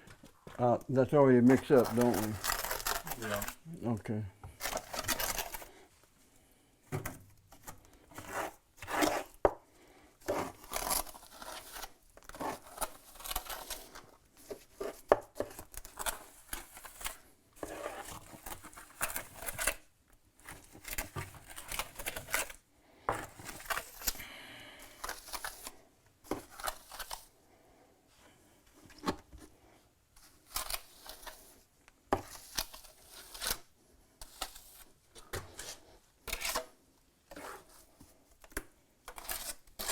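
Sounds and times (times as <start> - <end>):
trowel scraping mortar: 1.4 - 3.6, 8.1 - 9.4, 10.2 - 17.0, 17.6 - 19.8, 32.2 - 33.6, 34.2 - 37.9, 39.1 - 39.9.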